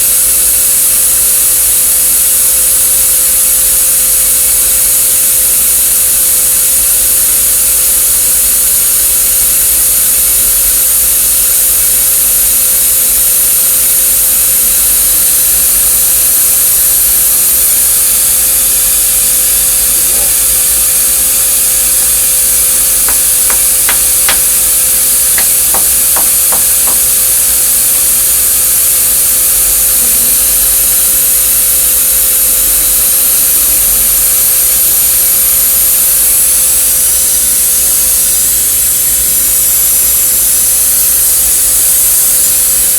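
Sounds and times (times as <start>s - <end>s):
loud steady hiss: 0.0s - 42.9s
constant hum: 19.1s - 28.1s
hammer tapping metal vise: 21.9s - 27.4s.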